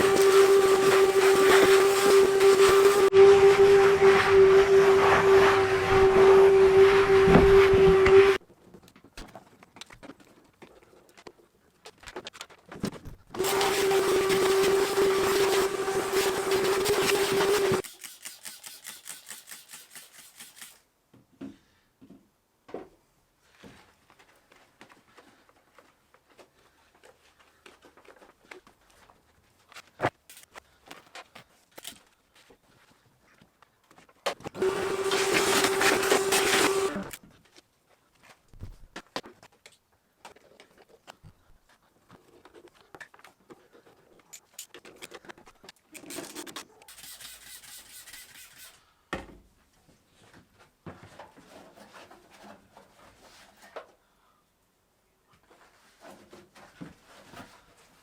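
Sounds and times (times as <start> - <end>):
cloth scrubbing sheet metal: 0.0 - 8.4, 13.4 - 20.8, 34.6 - 37.1, 46.9 - 48.8.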